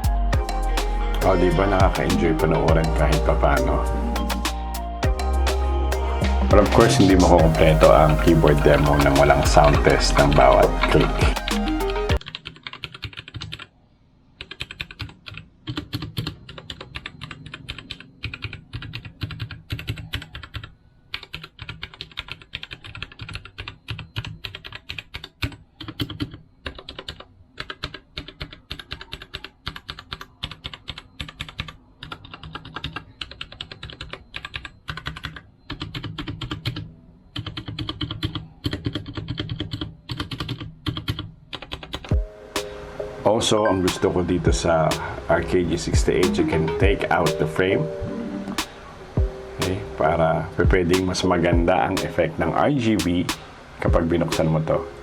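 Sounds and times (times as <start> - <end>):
mechanical keyboard typing: 9.0 - 13.7, 14.4 - 42.2.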